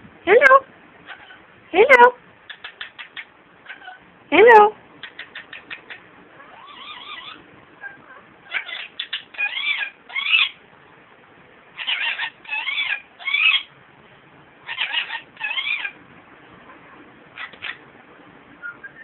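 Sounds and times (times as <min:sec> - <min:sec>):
parakeet squawking and warbling: 0:01.0 - 0:01.5, 0:02.5 - 0:04.0, 0:05.0 - 0:10.6, 0:11.8 - 0:13.7, 0:14.6 - 0:16.0, 0:17.4 - 0:17.8.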